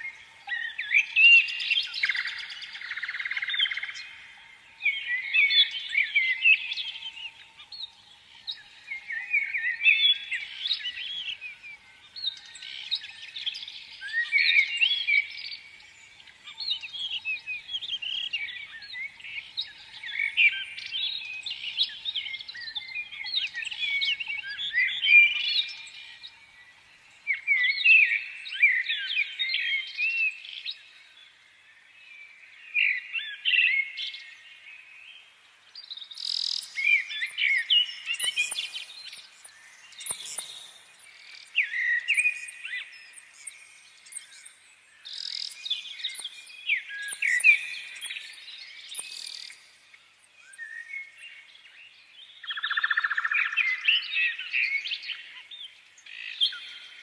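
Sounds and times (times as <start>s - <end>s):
songbirds chirping: 0.0s - 57.0s
sharp clicks: 38.2s - 39.2s.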